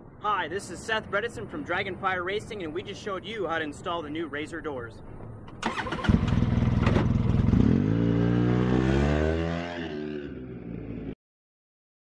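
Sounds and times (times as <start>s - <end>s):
engine running and revving: 6.1s - 11.2s.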